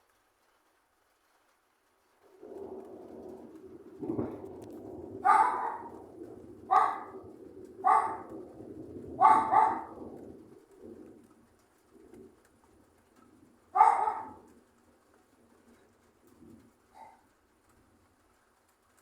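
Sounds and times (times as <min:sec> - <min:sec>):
low rumble: 0:02.3 - 0:10.4
animal calling: 0:09.2 - 0:10.0.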